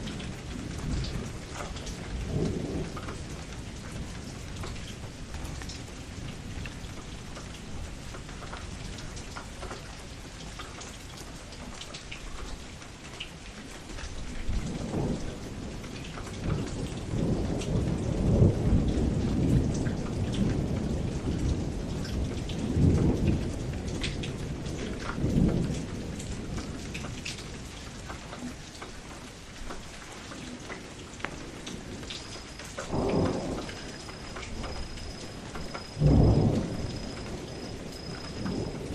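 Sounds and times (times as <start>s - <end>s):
raindrops ticking: 0.0s - 38.9s
steady rain falling: 0.0s - 38.9s
thunder rolling: 14.5s - 27.2s, 31.3s - 38.9s.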